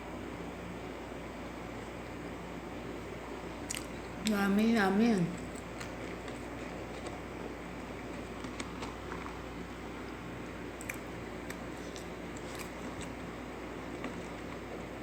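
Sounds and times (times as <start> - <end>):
low background hum: 0.0 - 15.0
person chewing pizza: 3.0 - 4.4, 5.3 - 15.0.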